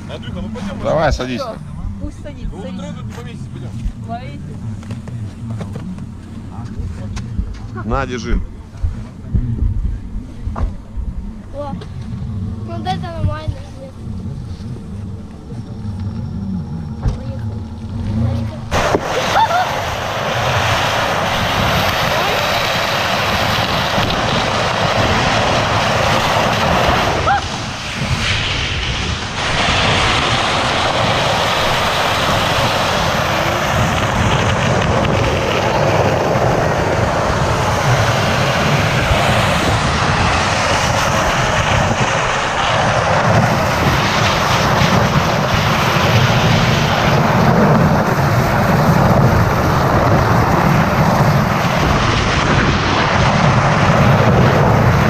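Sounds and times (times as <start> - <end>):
vehicle engine rumble: 0.0 - 55.0.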